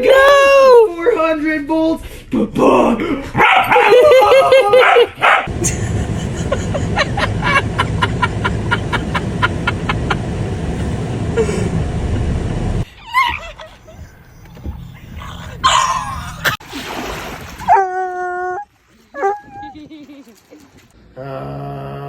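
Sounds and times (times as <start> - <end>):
loud rumbling with rapid ticks: 5.5 - 12.9
dog whining and yipping: 12.9 - 13.6, 17.6 - 18.6, 19.2 - 19.8.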